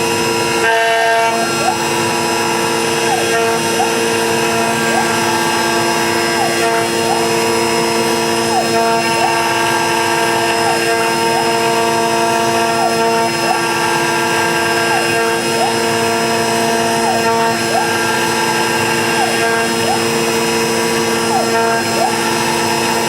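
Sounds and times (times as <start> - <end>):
cnc router machine whine: 0.0 - 23.0.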